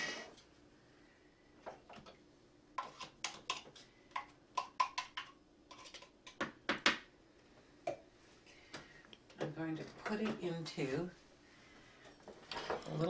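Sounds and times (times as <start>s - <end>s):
spatula scraping plastic bowl: 2.8s - 3.6s.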